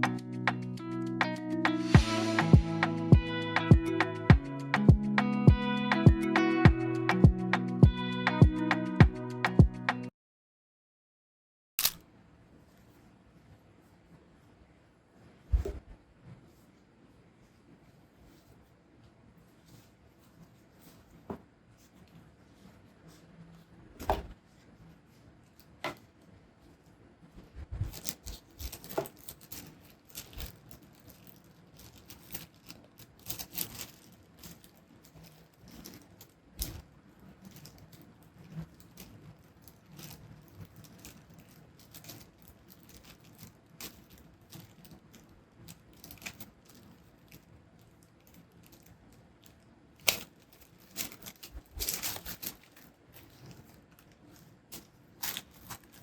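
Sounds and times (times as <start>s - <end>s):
paper and cardboard rustling: 19.4s - 56.0s.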